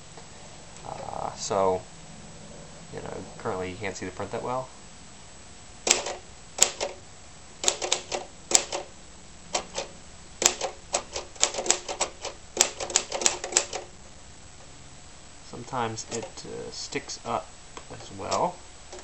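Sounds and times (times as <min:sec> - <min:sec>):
manual typewriter key strikes: 0:05.9 - 0:07.0, 0:07.6 - 0:08.9, 0:09.5 - 0:13.9.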